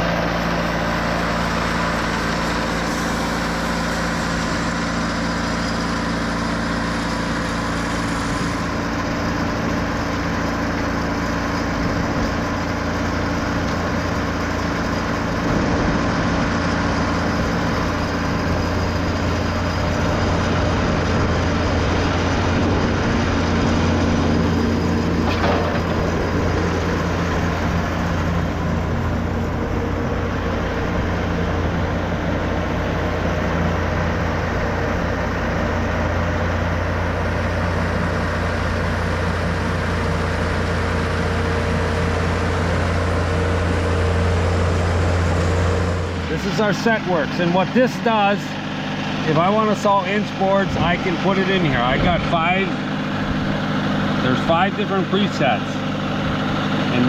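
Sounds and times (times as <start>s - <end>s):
sawmill engine running: 0.0s - 57.0s.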